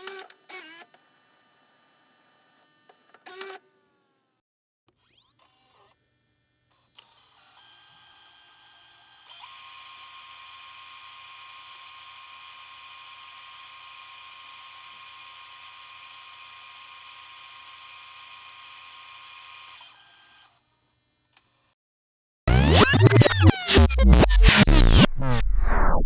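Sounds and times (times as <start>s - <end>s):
tape machine rewinding whine: 22.5s - 26.0s.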